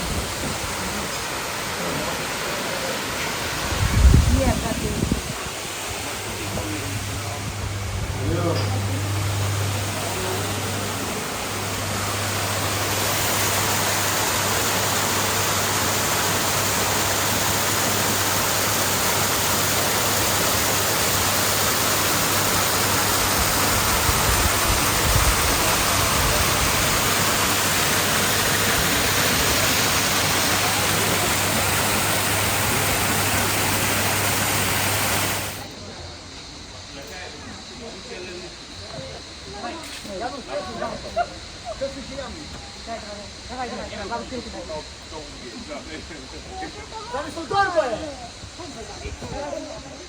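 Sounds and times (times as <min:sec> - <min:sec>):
waterfall rushing: 0:00.0 - 0:35.7
low rumble: 0:03.8 - 0:12.8.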